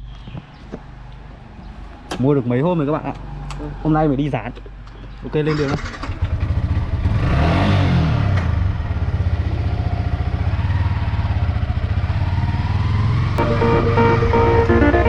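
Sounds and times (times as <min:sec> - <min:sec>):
motorcycle engine revving: 0:05.6 - 0:13.4.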